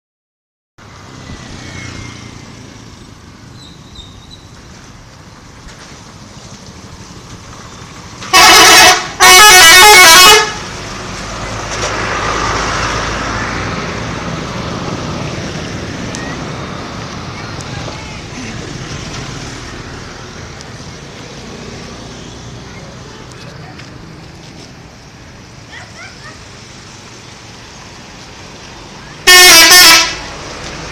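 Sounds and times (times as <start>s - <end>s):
road traffic noise: 0.8s - 30.9s
multi-tone musical bus horn: 8.2s - 10.8s, 29.2s - 30.4s.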